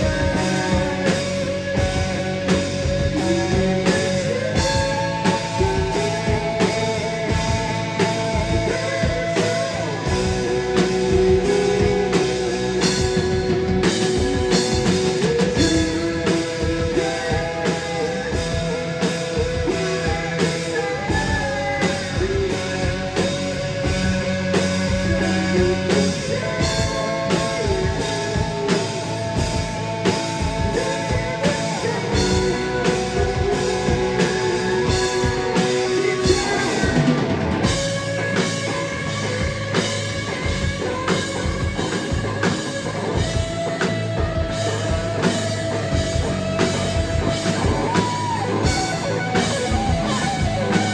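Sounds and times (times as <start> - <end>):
person singing: 0.0 - 39.1
drum kit beat: 0.0 - 50.9
electric guitar: 0.0 - 50.9.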